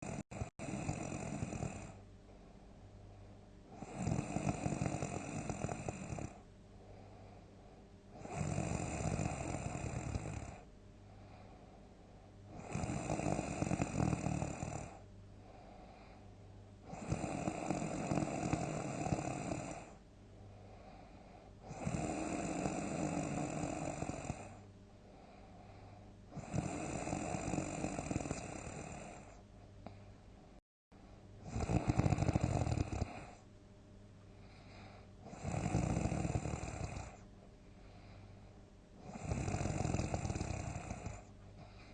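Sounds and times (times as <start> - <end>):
person snoring loudly: 0.0 - 2.0, 3.7 - 6.4, 8.1 - 10.7, 12.5 - 15.0, 16.8 - 20.0, 21.6 - 24.6, 26.3 - 29.4, 31.4 - 33.4, 35.2 - 37.2, 39.0 - 41.8
quiet breathing: 0.0 - 41.9.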